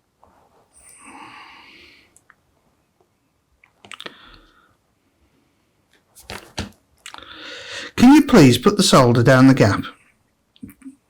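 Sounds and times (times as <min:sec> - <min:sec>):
soft breathy sound: 0:00.8 - 0:02.2, 0:07.2 - 0:08.0.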